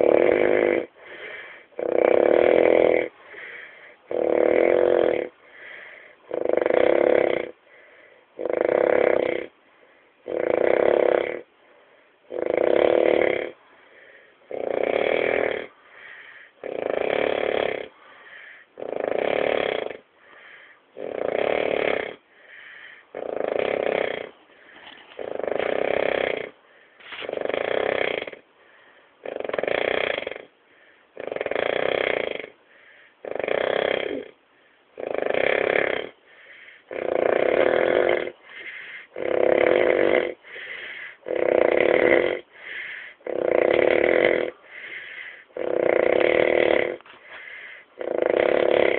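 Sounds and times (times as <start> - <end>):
person snoring: 0.0 - 9.5, 10.2 - 11.5, 12.3 - 28.4, 29.2 - 30.5, 31.1 - 34.4, 35.0 - 48.9
faint breathing: 0.9 - 1.8, 3.1 - 4.1, 5.3 - 6.3, 7.5 - 8.4, 9.5 - 10.3, 11.4 - 12.3, 13.5 - 14.7, 15.4 - 16.8, 17.8 - 19.0, 20.0 - 21.0, 22.2 - 27.4, 28.5 - 29.2, 30.6 - 31.2, 32.5 - 33.4, 34.3 - 35.0, 36.1 - 37.1, 37.9 - 48.9.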